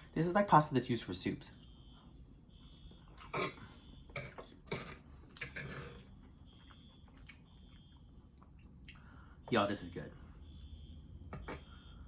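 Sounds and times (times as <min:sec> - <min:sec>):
faint high alarm tone: 0:00.0 - 0:12.0
chewing crispy food: 0:05.2 - 0:09.1.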